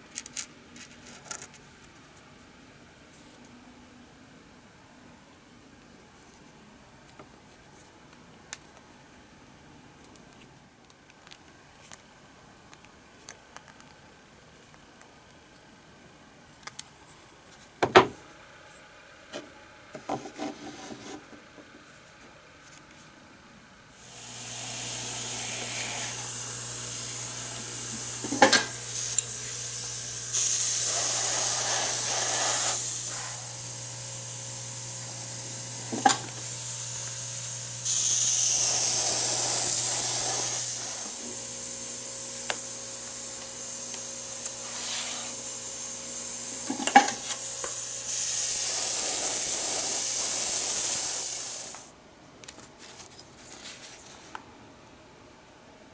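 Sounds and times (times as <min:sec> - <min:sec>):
small compressor hum: 0:23.7 - 0:52.0
airbrush spraying hiss: 0:24.0 - 0:51.9.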